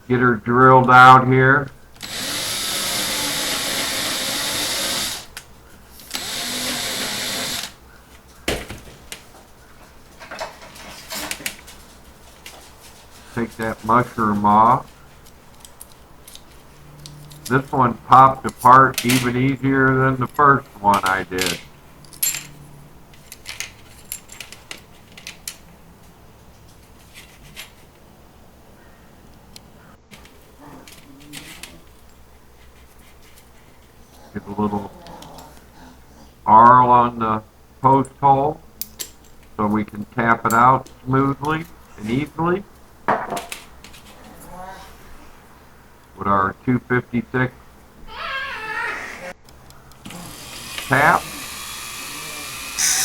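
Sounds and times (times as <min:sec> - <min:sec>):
small power drill running: 0:02.0 - 0:05.3, 0:06.1 - 0:07.8, 0:50.0 - 0:53.0
small metal parts clinking: 0:21.0 - 0:25.7
knock: 0:43.1 - 0:43.4.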